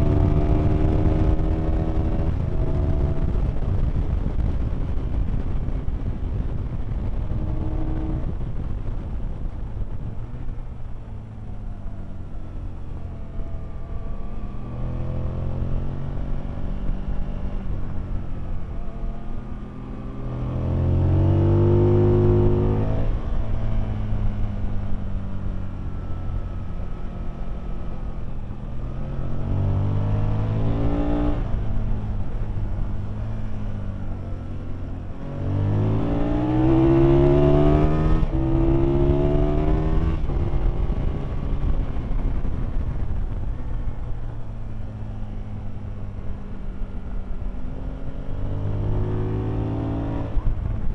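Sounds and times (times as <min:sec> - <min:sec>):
wind and road noise: 0:00.0 - 0:50.9
motorcycle engine revving hard: 0:35.4 - 0:41.3.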